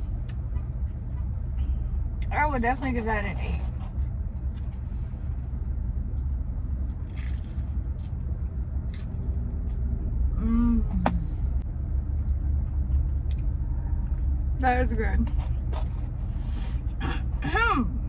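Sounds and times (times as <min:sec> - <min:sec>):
low rumble: 0:00.0 - 0:18.0
person humming: 0:10.4 - 0:11.3.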